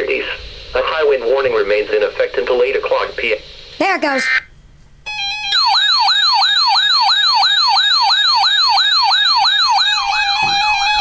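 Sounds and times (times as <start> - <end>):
alarm siren-like sweep: 5.1 - 11.0
steady alarm tone: 5.1 - 11.0.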